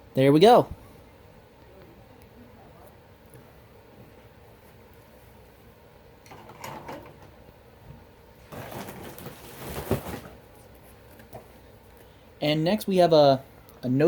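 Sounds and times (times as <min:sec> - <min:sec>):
rustling and handling noises: 0:08.4 - 0:12.2.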